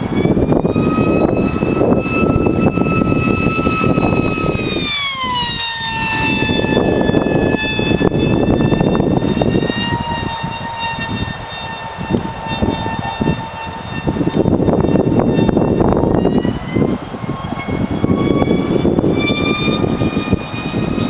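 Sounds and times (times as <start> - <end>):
model motor whine: 0.0 - 21.0.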